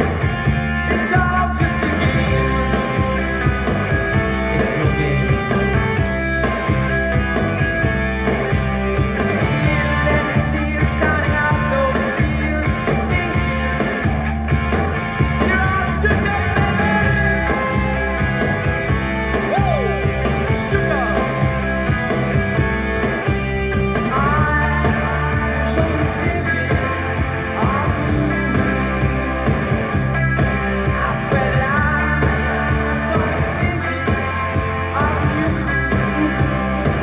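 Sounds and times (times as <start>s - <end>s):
rock and roll song with singer: 0.0s - 37.0s.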